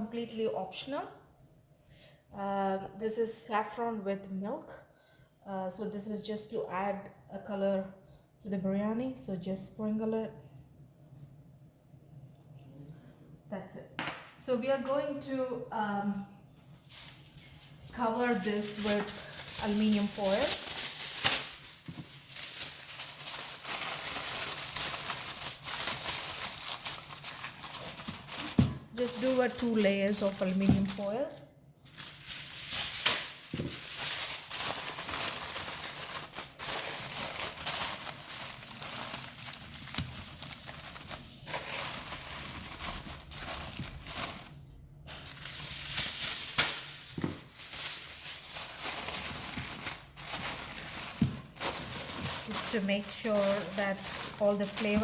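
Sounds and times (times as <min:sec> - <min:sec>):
aluminium foil crinkling: 0:16.8 - 0:44.6, 0:45.2 - 0:55.0.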